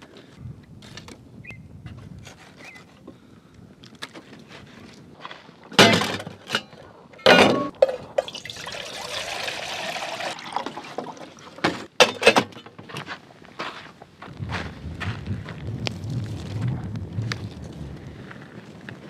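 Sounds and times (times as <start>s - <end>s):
rushing pouring noise: 8.2s - 11.7s.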